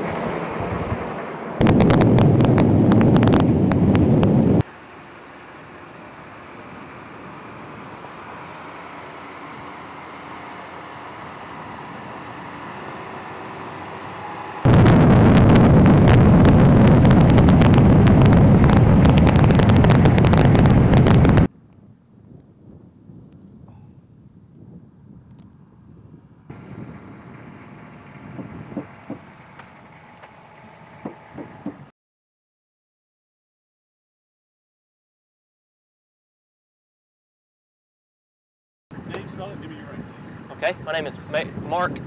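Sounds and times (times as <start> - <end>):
vehicle noise with dense crackling: 0.0 - 31.9, 38.9 - 42.0
steady low rumble: 1.6 - 4.6, 14.7 - 21.8.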